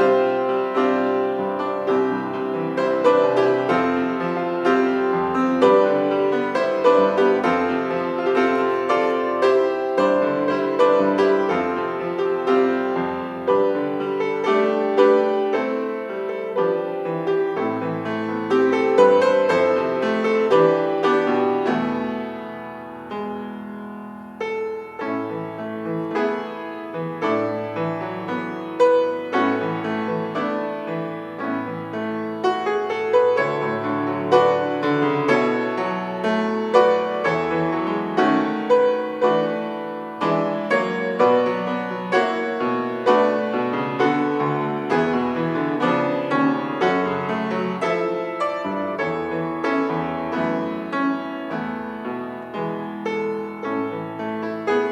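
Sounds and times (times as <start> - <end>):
solo piano piece: 0.0 - 54.9.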